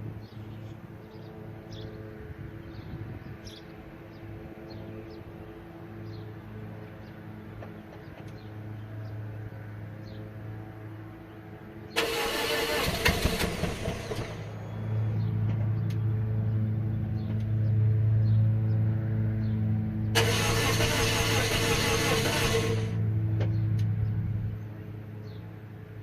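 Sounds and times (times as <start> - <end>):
car engine cranking: 12.0 - 14.5, 20.2 - 23.0
car engine running: 20.1 - 23.9.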